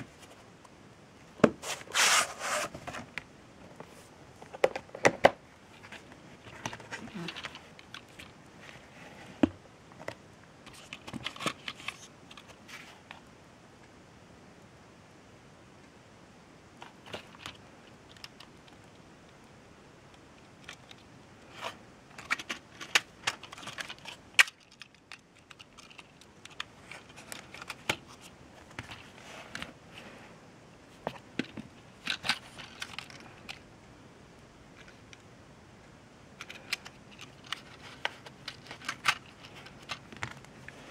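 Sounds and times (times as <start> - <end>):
crinkling rustles: 5.6 - 13.3, 20.4 - 33.7, 36.4 - 40.9.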